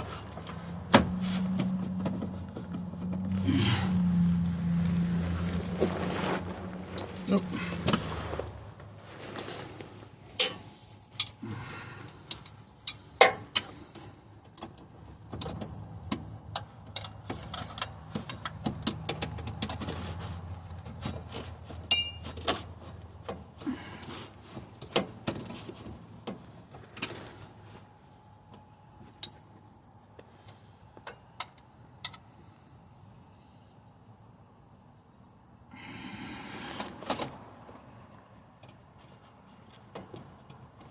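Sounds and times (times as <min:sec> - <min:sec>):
wrench and metal hardware clinking: 0:10.4 - 0:11.4, 0:12.2 - 0:15.6, 0:16.6 - 0:20.0, 0:20.9 - 0:22.5.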